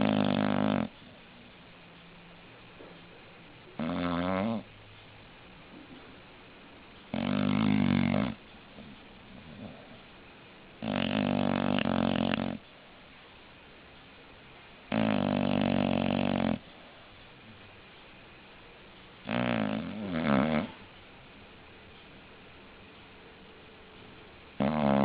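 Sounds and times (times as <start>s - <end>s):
dog snoring: 0.0s - 1.2s, 3.8s - 4.7s, 7.1s - 10.0s, 10.8s - 12.6s, 14.9s - 16.7s, 19.2s - 20.9s, 24.6s - 25.0s.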